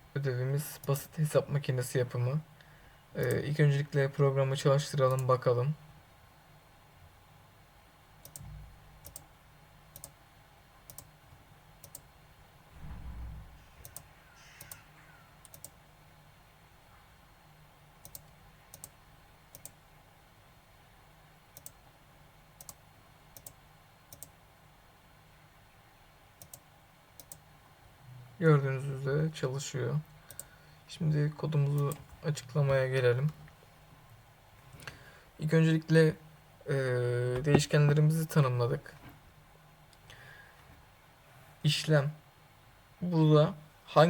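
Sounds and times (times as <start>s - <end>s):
computer mouse clicking: 8.2s - 9.3s, 9.9s - 10.2s, 10.9s - 12.1s, 13.7s - 15.8s, 18.0s - 19.8s, 21.6s - 21.8s, 22.6s - 24.4s, 26.4s - 26.6s, 27.2s - 27.5s, 30.2s - 30.5s.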